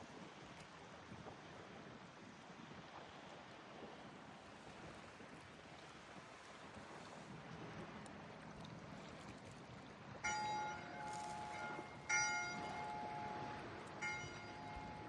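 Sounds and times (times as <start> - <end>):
bell ringing: 10.2 - 15.0.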